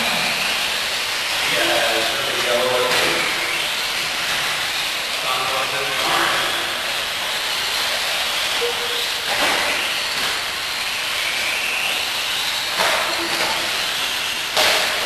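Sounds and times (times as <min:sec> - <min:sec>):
steady hiss: 0:00.0 - 0:15.0
toy car motors whining: 0:00.0 - 0:15.0.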